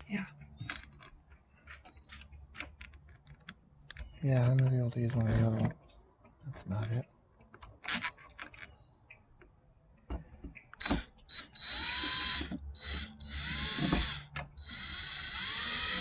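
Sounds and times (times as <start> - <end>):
power drill whining: 10.8 - 16.0.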